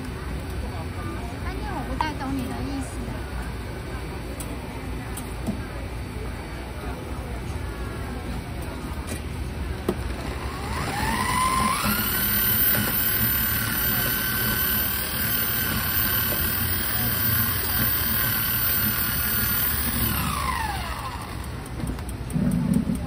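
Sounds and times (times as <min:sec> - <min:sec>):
blender motor whining: 0:10.2 - 0:21.7.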